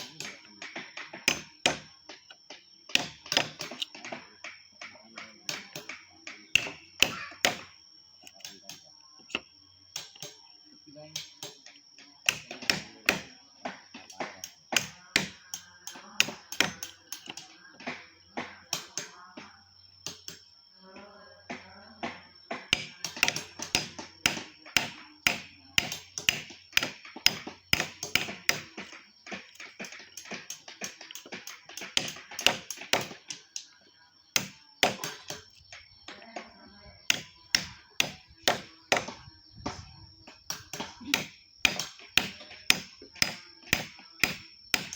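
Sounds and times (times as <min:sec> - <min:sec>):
carving tool tapping into wood: 0:00.1 - 0:07.6, 0:11.2 - 0:15.6, 0:21.5 - 0:33.2, 0:40.5 - 0:44.9.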